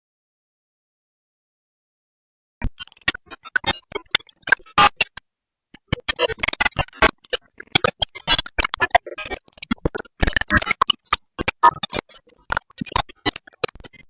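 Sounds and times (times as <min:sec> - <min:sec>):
digital glitch stuttering clicks: 0:02.6 - 0:05.2, 0:05.8 - 0:14.0.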